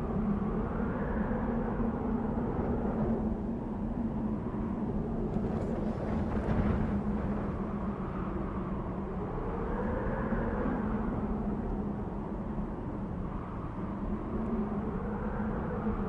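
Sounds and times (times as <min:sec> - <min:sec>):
faint wind whistle: 0:00.0 - 0:16.0.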